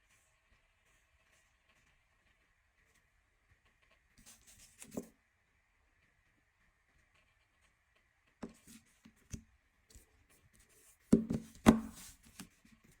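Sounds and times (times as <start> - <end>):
smartphones handled tapping: 11.1 - 12.0.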